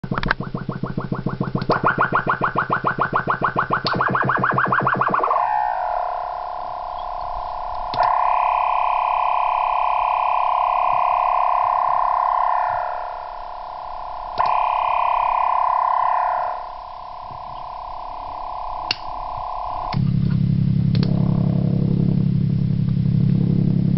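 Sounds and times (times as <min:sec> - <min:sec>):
rapidly pulsing electronic tone: 0:00.0 - 0:23.9
steady chord-like electronic tone: 0:00.0 - 0:23.9.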